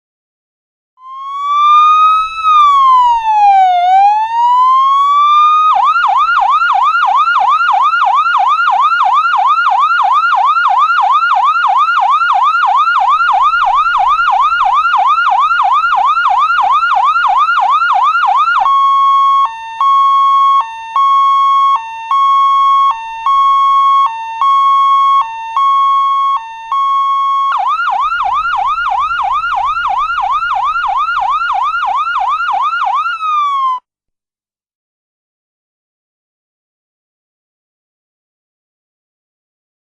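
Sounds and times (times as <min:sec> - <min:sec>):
ambulance siren: 0:01.0 - 0:33.9.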